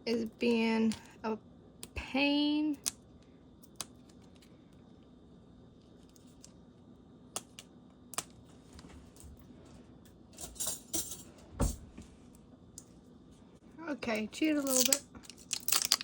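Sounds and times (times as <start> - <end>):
paper crinkling and tearing: 14.6 - 16.0.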